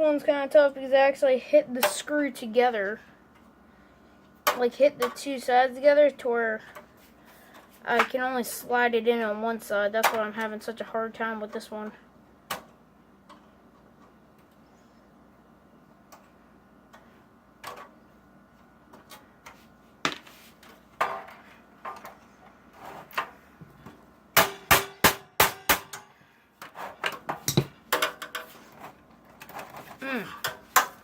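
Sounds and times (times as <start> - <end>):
sharp hammer strikes: 24.4 - 26.1.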